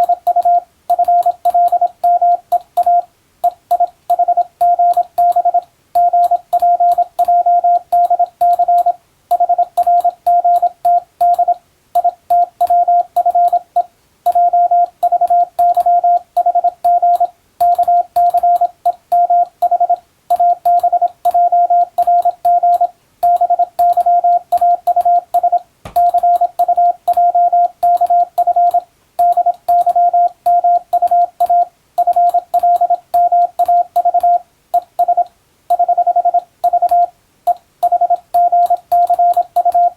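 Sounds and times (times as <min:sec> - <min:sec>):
faint keying clicks: 0:00.0 - 0:35.8
morse code beeps: 0:00.0 - 0:39.9.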